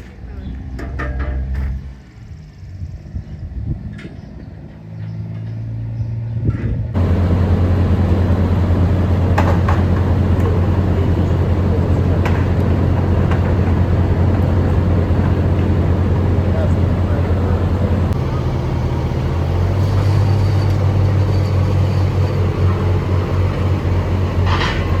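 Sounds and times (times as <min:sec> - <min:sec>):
engine humming: 0:07.0 - 0:25.0.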